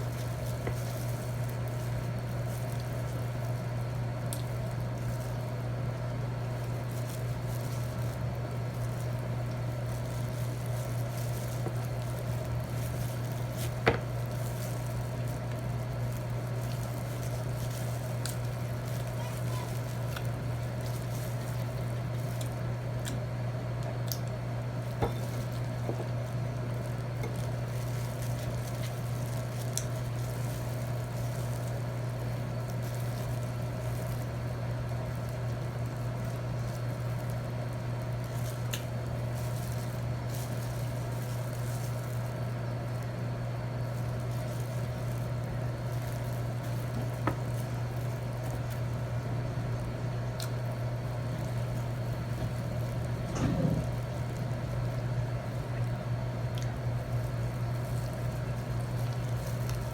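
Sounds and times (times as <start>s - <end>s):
low electrical hum: 0.0s - 59.9s
chewing: 6.5s - 37.4s, 43.7s - 59.9s.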